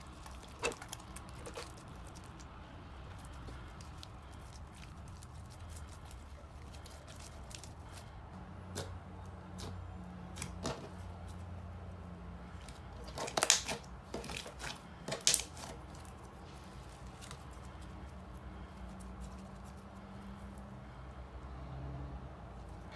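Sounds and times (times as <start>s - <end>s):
slime crackling and popping: 0.0s - 8.0s, 13.0s - 16.1s.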